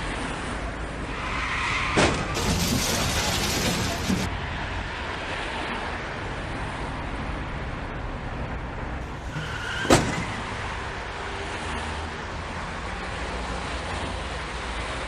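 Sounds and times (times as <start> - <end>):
road traffic noise: 0.0 - 15.0
tyre squeal: 1.1 - 4.3, 9.1 - 10.5
car crash: 1.8 - 4.4, 9.1 - 10.5.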